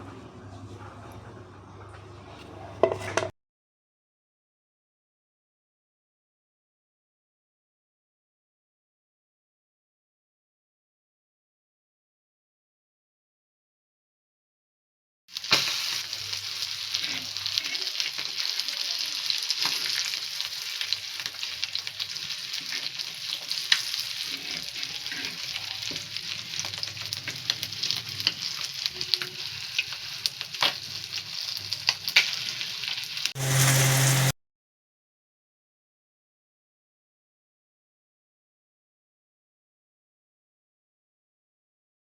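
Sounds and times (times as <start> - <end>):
fish sizzling in hot oil: 15.3 - 34.4
low hum: 33.4 - 34.3.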